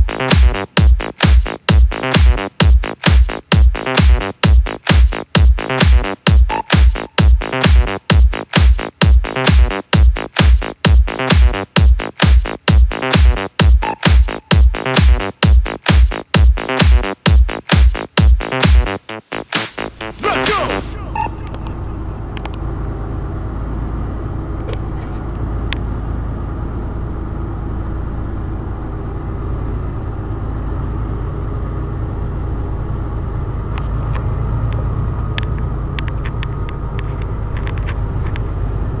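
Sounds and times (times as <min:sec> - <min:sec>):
low engine rumble: 0:19.9 - 0:39.0.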